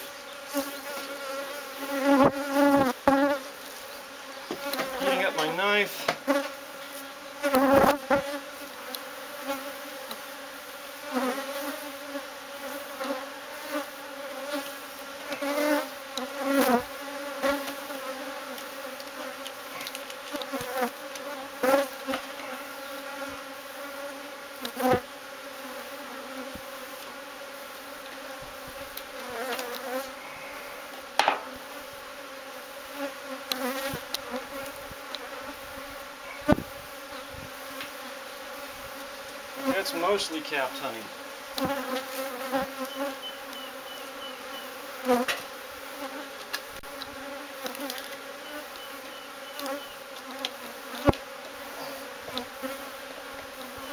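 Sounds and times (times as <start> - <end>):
honeybee colony buzzing: 0.0 - 53.9
sharp knocks: 31.2 - 31.4.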